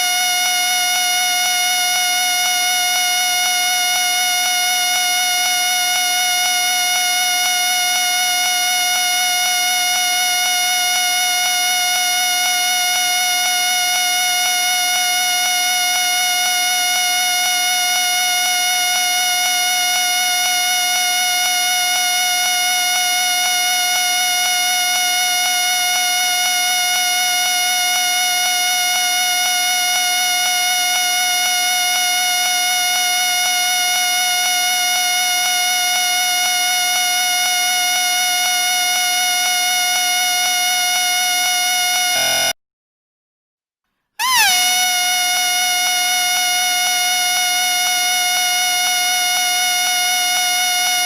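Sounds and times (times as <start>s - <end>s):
whistle blown continuously: 36.6s - 42.6s, 44.2s - 51.0s
shrill whistle note: 42.0s - 42.6s, 44.2s - 46.4s.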